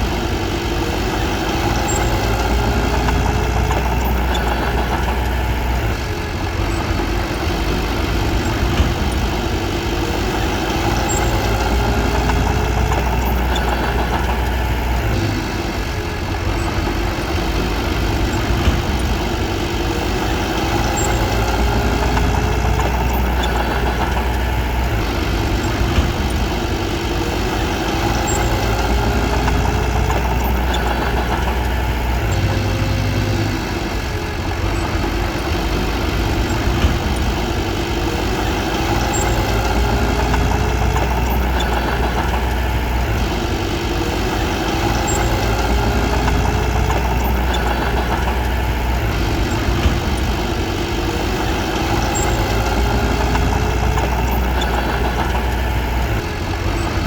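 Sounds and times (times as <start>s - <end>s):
bulldozer diesel engine rumbling: 0.0s - 57.0s.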